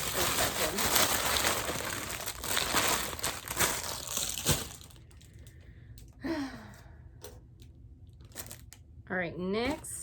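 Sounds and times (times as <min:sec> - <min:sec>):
plastic packaging crinkling: 0:00.0 - 0:05.6, 0:08.0 - 0:08.9.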